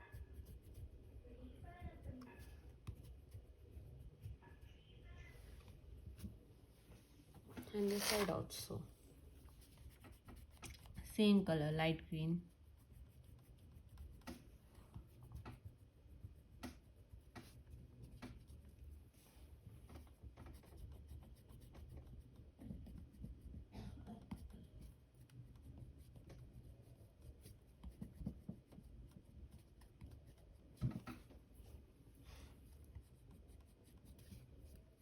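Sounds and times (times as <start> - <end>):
colouring on paper scratching: 0.0 - 6.4, 7.5 - 35.0.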